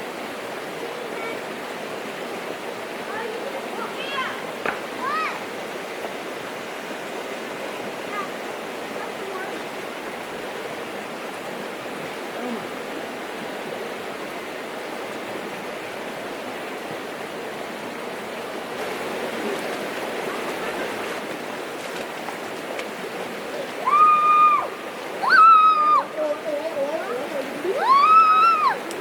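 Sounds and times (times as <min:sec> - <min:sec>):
river water rushing: 0:00.0 - 0:29.0
loud high cry: 0:23.8 - 0:26.2, 0:27.7 - 0:28.9.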